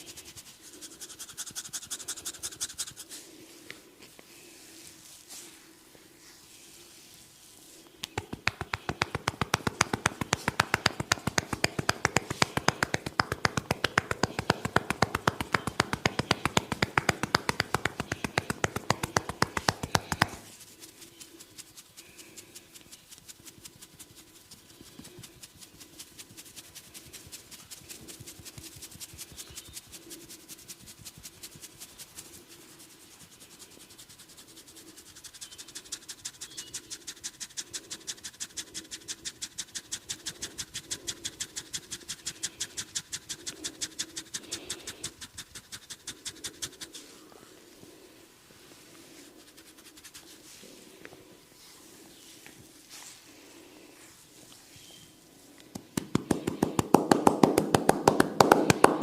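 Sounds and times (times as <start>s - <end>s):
soft light tapping: 8.0s - 20.4s
hands slapping on skin: 8.0s - 20.5s, 55.6s - 59.0s.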